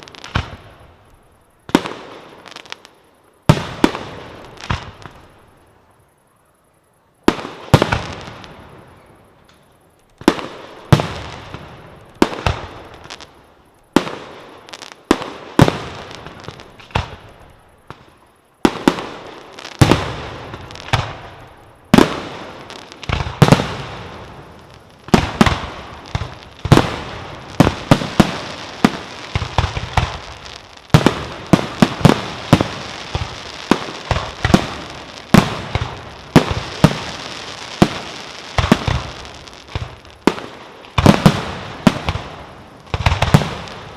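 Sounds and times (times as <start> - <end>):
firework bangs: 0.0 - 0.9, 13.9 - 43.9
firework crackle: 0.0 - 6.2, 7.2 - 43.9.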